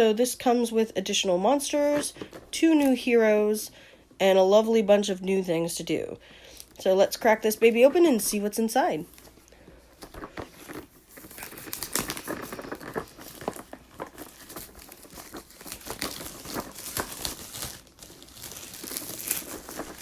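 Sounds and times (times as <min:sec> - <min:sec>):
packaging crackling and rustling: 0:07.7 - 0:20.0
packaging tearing: 0:10.0 - 0:20.0.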